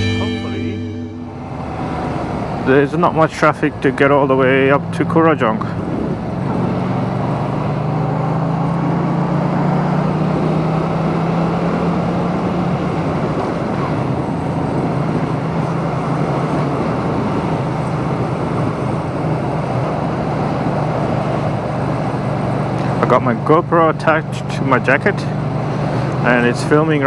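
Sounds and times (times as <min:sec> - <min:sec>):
motorcycle engine droning: 0:00.0 - 0:27.0
wind rushing: 0:01.3 - 0:02.7.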